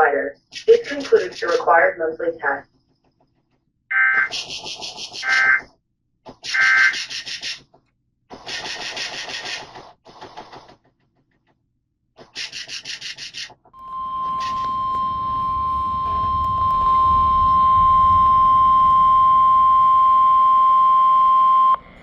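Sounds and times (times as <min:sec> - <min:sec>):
buzzing digital data screeches: 0:13.8 - 0:21.8.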